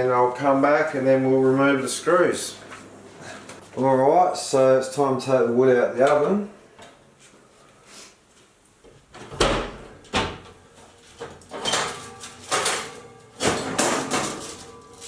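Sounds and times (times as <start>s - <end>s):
oven door opening: 11.2s - 15.0s.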